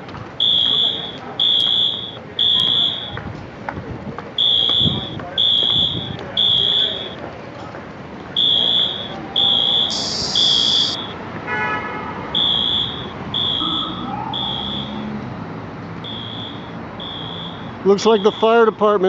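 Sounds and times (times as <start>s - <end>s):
fire alarm horns: 0.4s - 3.3s, 4.4s - 7.2s, 8.4s - 15.2s, 16.0s - 19.0s
short hiss: 9.9s - 10.8s.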